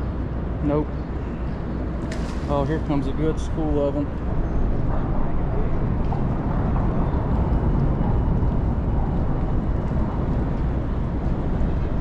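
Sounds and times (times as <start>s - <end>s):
city background rumble: 0.0s - 12.0s.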